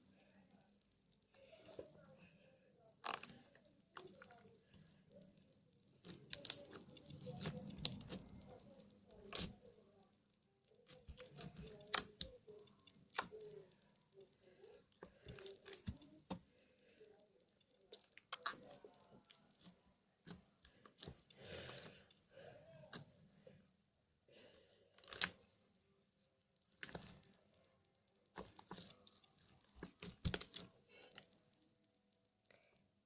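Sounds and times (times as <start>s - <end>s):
slime squeezed with sticky pops: 6.0s - 8.4s.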